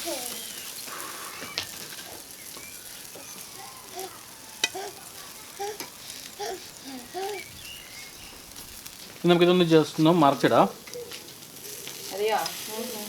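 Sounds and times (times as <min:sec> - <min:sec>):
food sizzling on a grill: 0:00.0 - 0:13.0.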